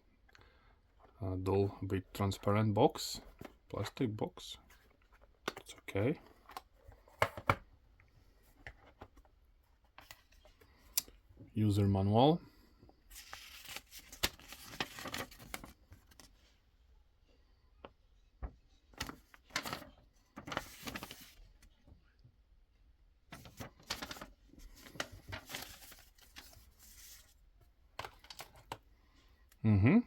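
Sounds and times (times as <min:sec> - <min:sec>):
paper and plastic rustling: 0:13.1 - 0:16.5, 0:18.9 - 0:21.8, 0:23.3 - 0:28.9.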